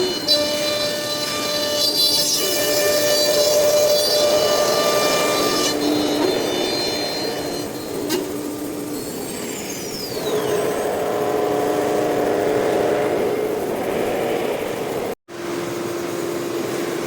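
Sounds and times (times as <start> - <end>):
router machine running: 0.0 - 9.4
machine hum: 0.0 - 17.0.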